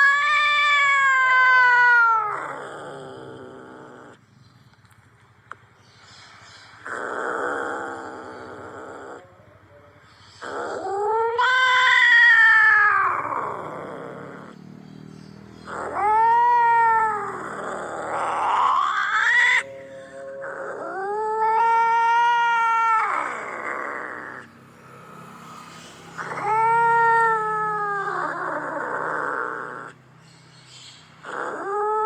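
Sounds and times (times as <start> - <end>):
cat yowling: 0.0 - 4.2, 6.8 - 9.5, 10.4 - 14.6, 15.6 - 24.5, 26.0 - 30.0, 31.2 - 32.0.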